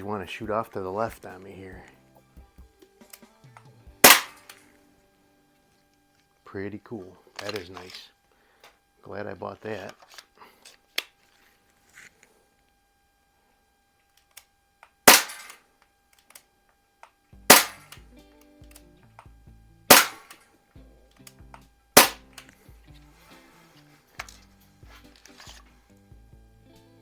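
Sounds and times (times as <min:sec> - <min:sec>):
background music: 0:00.0 - 0:05.7, 0:17.4 - 0:27.0
bb pistol shots: 0:04.0 - 0:04.6, 0:15.1 - 0:15.6, 0:17.5 - 0:18.0, 0:19.9 - 0:20.4, 0:22.0 - 0:22.4.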